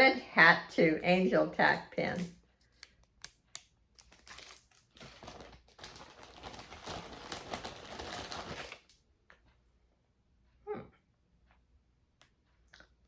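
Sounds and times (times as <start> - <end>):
wrapping crinkling: 3.9 - 9.0.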